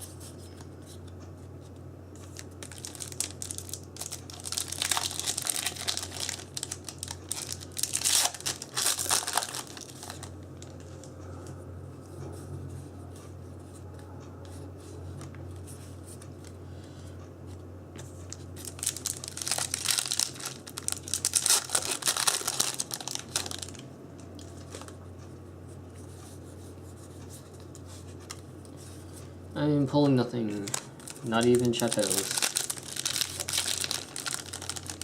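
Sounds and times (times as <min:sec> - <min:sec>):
low steady hum: 0:00.0 - 0:35.0
foil wrapper tearing and crinkling: 0:02.4 - 0:10.8, 0:18.6 - 0:23.8, 0:30.6 - 0:35.0.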